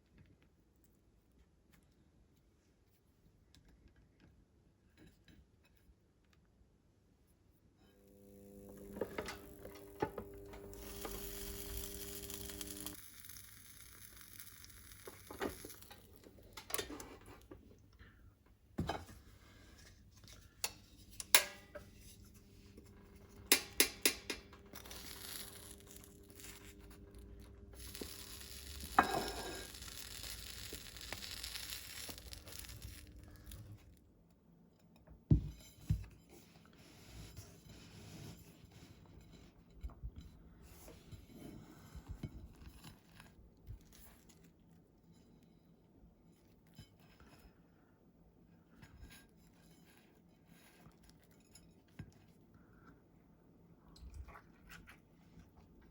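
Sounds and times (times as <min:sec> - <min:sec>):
electrical hum: 0:07.9 - 0:18.2, 0:21.4 - 0:34.0
packaging crinkling and tearing: 0:24.7 - 0:29.0, 0:29.6 - 0:33.9.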